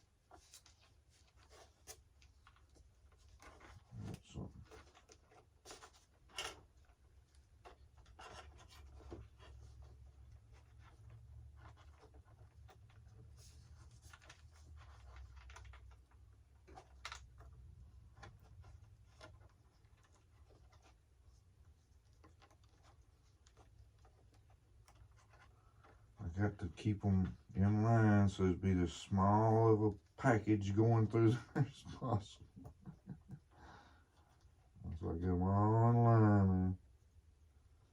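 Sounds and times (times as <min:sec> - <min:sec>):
hands handling wires and parts: 0:00.0 - 0:27.9.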